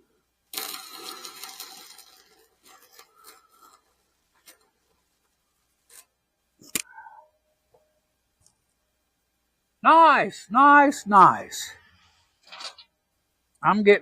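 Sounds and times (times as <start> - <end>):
welding arc crackling: 0.0 - 6.8.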